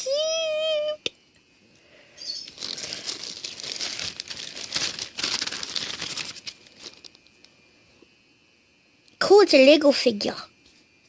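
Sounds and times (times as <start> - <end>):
packaging crinkling and tearing: 2.4 - 7.5.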